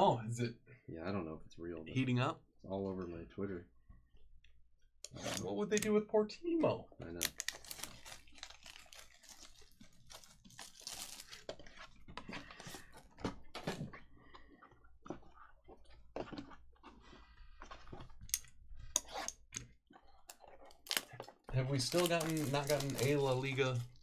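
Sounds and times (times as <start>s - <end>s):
trading cards and packaging handled: 7.1s - 13.9s, 20.6s - 24.0s.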